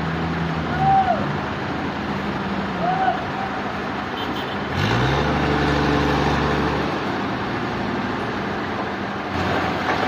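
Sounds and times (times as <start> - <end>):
engine revving: 4.7 - 8.2, 9.3 - 10.0.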